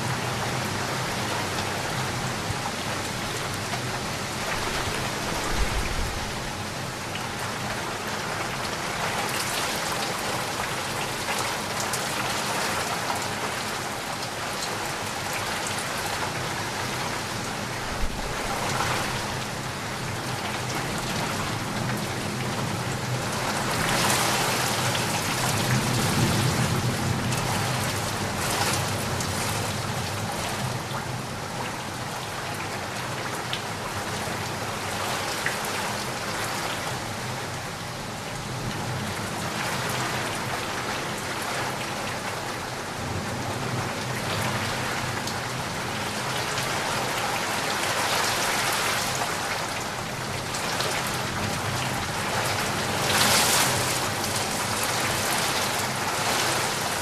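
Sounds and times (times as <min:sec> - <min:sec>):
heavy rain falling: 0:00.0 - 0:57.0.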